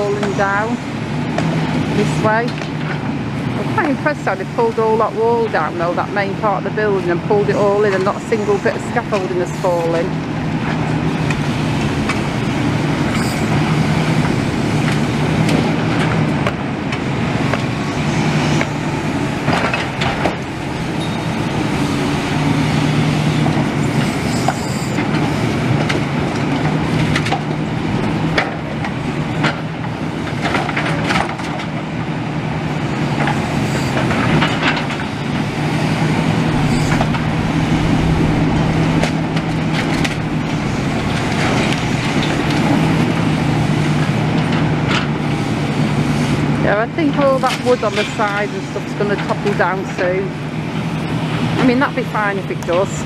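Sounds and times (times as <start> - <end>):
demolition machine engine running: 0.0 - 53.0
metal and rubble clanking: 32.8 - 46.4.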